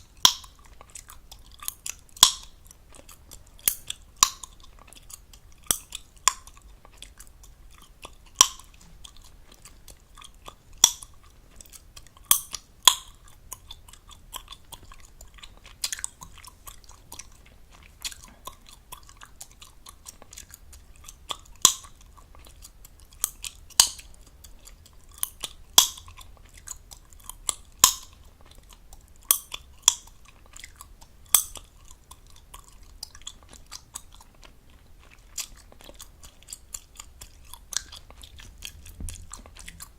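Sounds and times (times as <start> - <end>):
gum chewing with wet smacking: 0.0 - 39.9
sharp gum pops: 27.8 - 28.2, 31.3 - 31.6.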